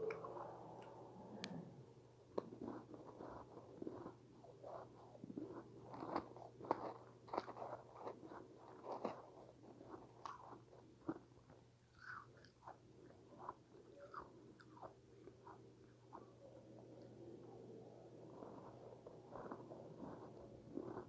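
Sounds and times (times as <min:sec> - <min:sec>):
low hum: 0:00.0 - 0:02.5
person chewing crunchy ice: 0:02.4 - 0:16.2, 0:18.3 - 0:21.0.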